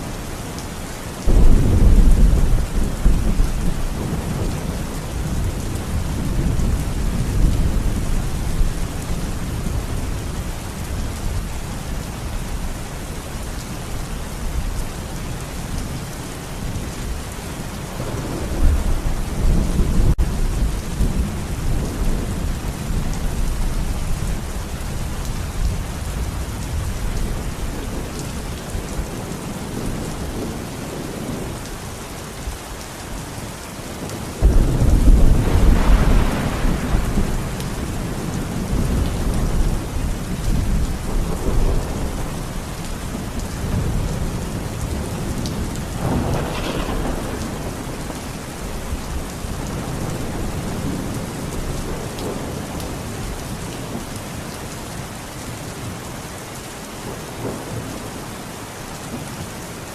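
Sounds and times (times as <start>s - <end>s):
heavy rain: 0.0s - 59.9s
thunder rumbling: 1.2s - 11.6s, 16.6s - 31.9s, 34.0s - 54.0s
loud thunder clap: 34.4s - 37.8s, 45.5s - 48.3s.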